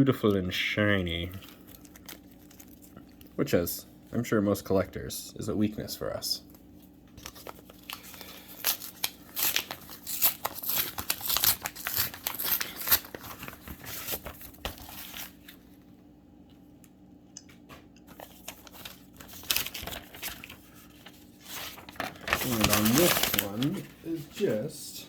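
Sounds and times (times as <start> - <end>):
plastic packaging crinkling: 1.0 - 3.5, 6.6 - 15.8, 18.1 - 24.0.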